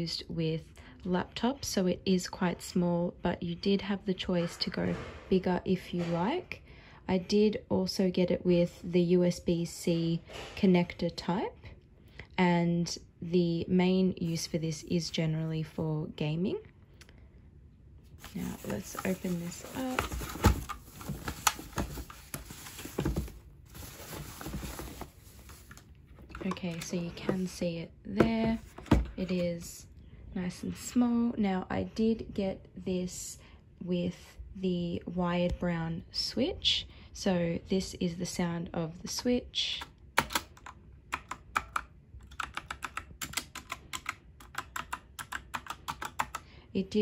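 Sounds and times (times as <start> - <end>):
packaging knocks and taps: 18.2 - 27.5
packaging rustling: 18.2 - 27.5
mechanical keyboard keys clacking: 40.2 - 46.4.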